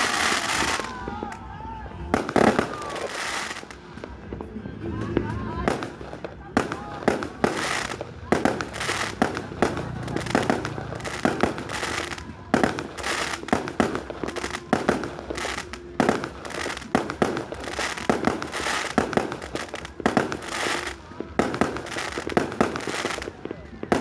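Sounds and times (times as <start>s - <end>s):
fireworks bangs: 0.0s - 24.0s
fireworks crackling: 0.0s - 24.0s.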